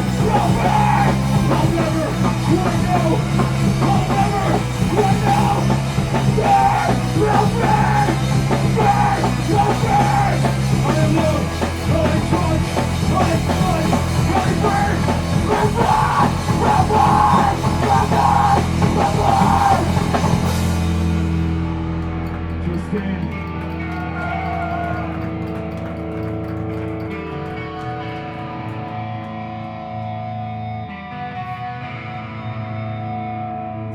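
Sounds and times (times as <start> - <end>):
drums and cymbals: 0.0 - 21.6
bass guitar: 0.0 - 33.9
distorted guitars: 0.0 - 33.9.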